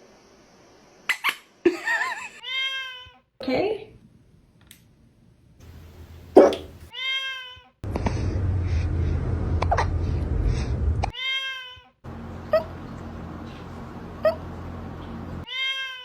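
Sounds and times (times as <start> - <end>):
cat meowing: 2.4 - 3.2, 6.4 - 7.8, 11.1 - 12.7, 15.5 - 16.0
loud noisy background: 12.1 - 15.4.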